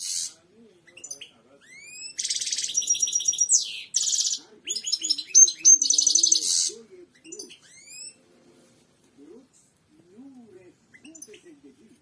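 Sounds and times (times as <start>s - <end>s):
goldfinch singing: 0.9s - 8.2s.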